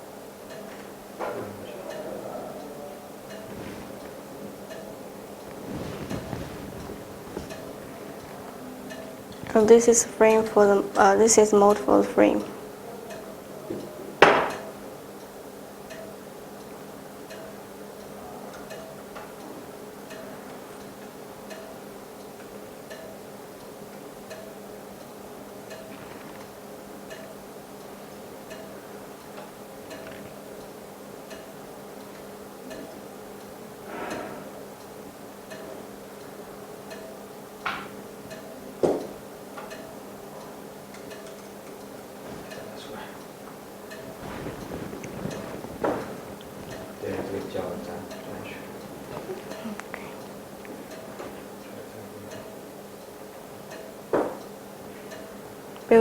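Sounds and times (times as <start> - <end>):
steady low hum: 0.0 - 14.2, 34.6 - 56.0.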